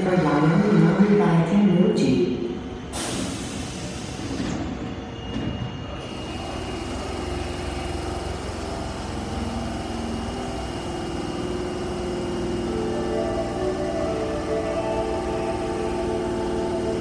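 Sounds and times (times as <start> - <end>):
subway train rumbling: 0.0 - 17.0
train motor whine: 5.9 - 17.0.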